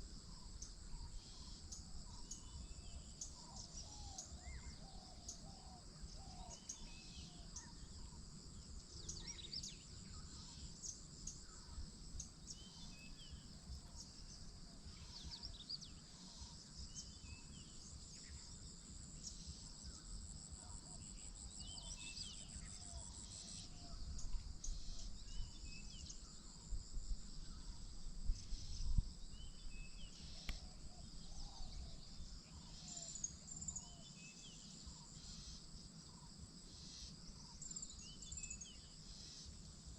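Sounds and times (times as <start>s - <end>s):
insects droning: 0.0s - 39.9s.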